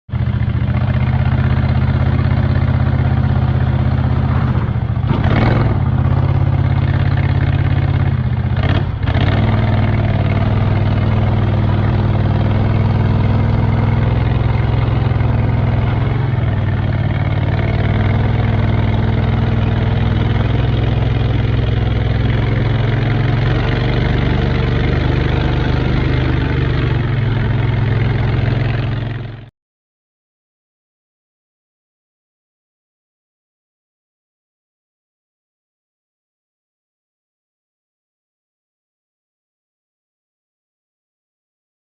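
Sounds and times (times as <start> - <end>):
v-twin engine running and revving: 0.1 - 29.5.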